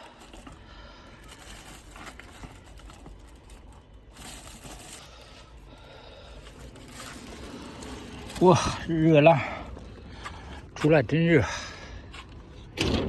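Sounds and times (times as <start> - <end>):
plastic bag crinkling: 0.0 - 9.8.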